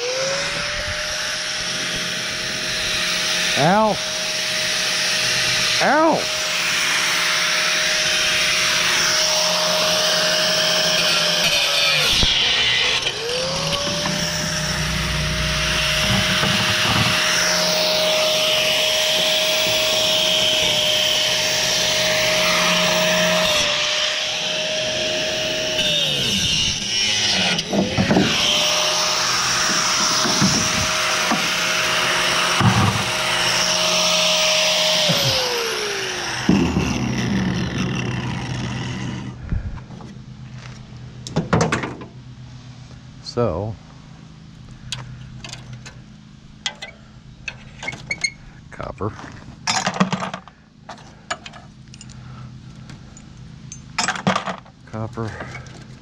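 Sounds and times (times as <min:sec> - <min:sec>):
power tool motor whine: 0:00.0 - 0:39.6
rough cutting noise: 0:00.0 - 0:41.1.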